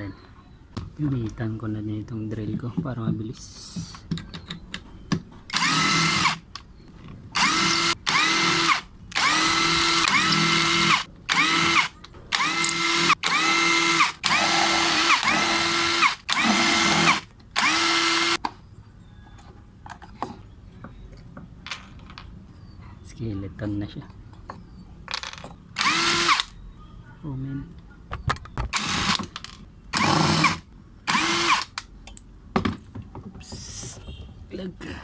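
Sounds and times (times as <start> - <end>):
electric drill motor whining: 5.5 - 6.4, 7.4 - 18.4, 25.8 - 26.5, 28.7 - 29.2, 30.0 - 31.7.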